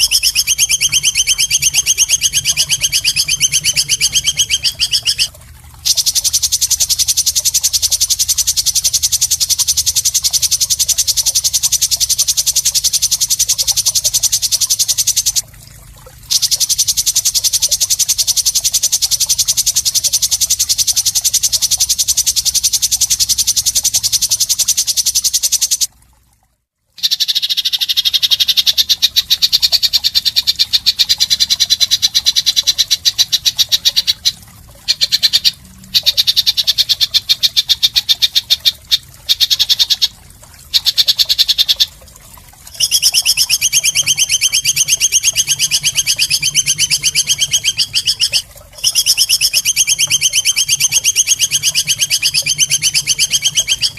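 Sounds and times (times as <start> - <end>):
rattling bird trill: 0.0 - 15.4, 27.0 - 40.2, 42.7 - 53.9.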